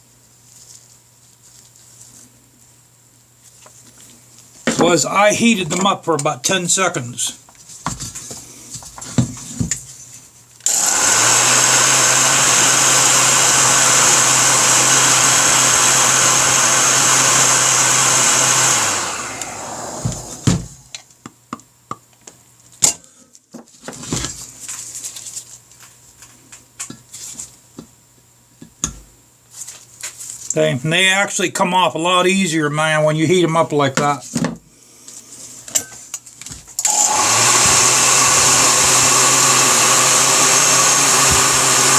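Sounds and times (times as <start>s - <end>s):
heat gun blowing hot air: 10.6s - 20.9s, 36.8s - 41.9s.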